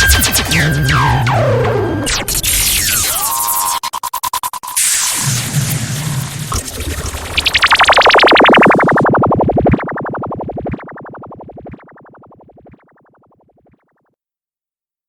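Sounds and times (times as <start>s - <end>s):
pulsing tone sweeping downward: 6.5s - 13.0s.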